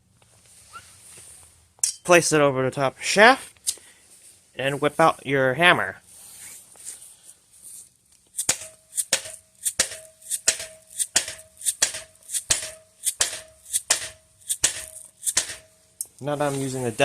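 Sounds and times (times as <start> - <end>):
hammer striking metal socket: 8.4 - 15.7.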